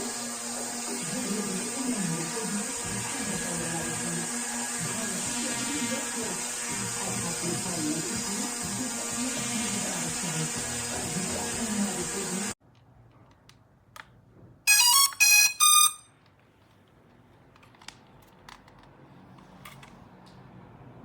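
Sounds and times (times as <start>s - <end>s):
loud electronic beeps: 14.7s - 16.1s.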